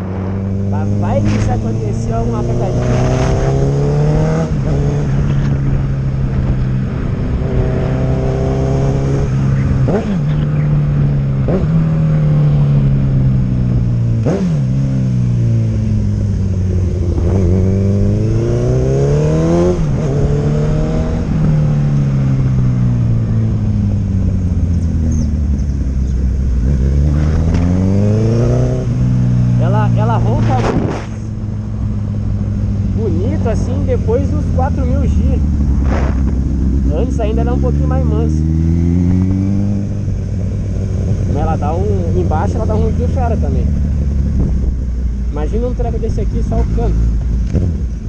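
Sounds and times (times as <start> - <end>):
motorcycle engine revving: 0.0 - 48.0
exhaust backfire pops: 1.2 - 1.7, 27.1 - 27.8, 30.3 - 31.2, 35.7 - 36.5, 47.2 - 47.9.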